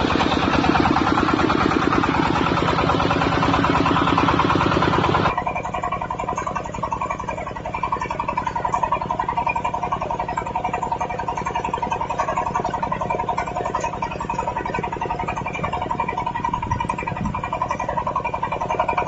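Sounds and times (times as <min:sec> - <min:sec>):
diesel engine running: 0:00.0 - 0:19.0.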